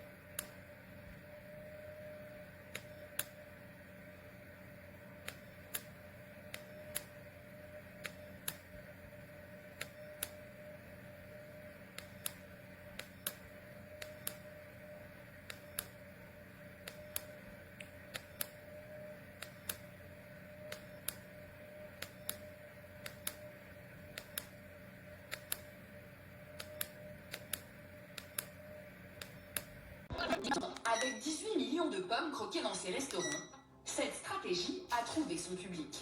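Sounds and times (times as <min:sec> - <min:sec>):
steady hum: 0:00.0 - 0:36.0.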